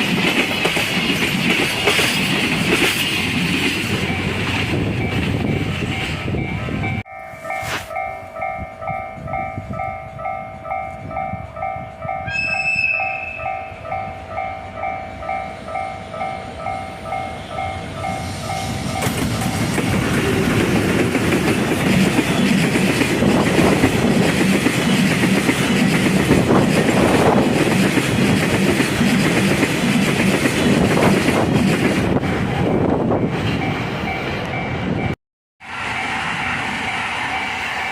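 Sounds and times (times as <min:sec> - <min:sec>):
train wheels clattering: 0:00.0 - 0:06.2
level crossing warning bell: 0:04.0 - 0:19.7.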